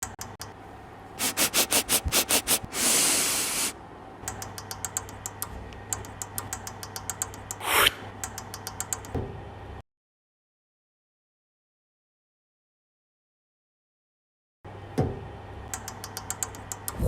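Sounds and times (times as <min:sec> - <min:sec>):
short hiss: 0:01.2 - 0:03.8
light rapid ticks: 0:08.2 - 0:09.2.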